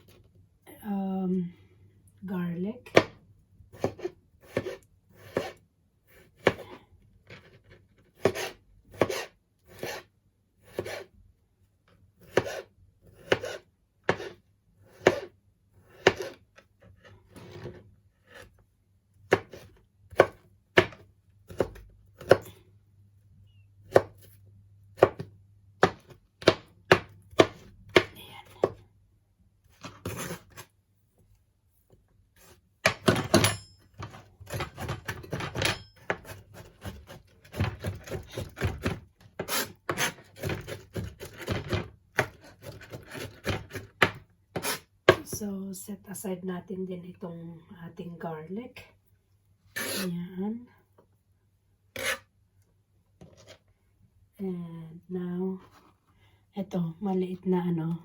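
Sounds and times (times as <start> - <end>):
knife chopping on cutting board: 3.8 - 5.6, 8.2 - 10.0, 10.6 - 11.1, 12.2 - 15.3, 15.9 - 16.4, 19.3 - 22.5, 23.8 - 24.3, 25.0 - 28.8, 32.8 - 45.3.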